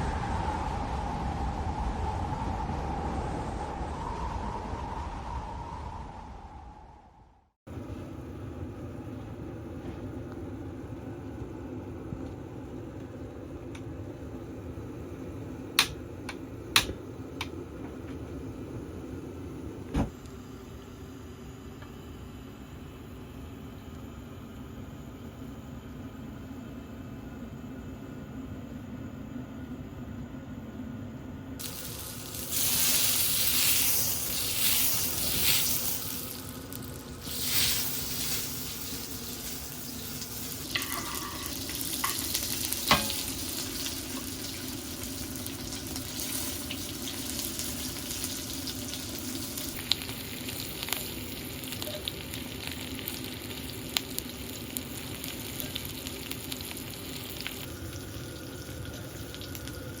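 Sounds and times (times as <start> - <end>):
food sizzling in a pan: 31.6 - 60.0.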